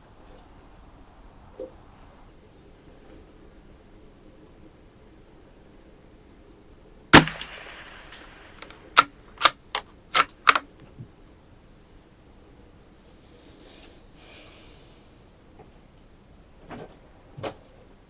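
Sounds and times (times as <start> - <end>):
rifle bolt clicks: 7.2 - 10.6
rifle shot with echo: 7.2 - 10.6.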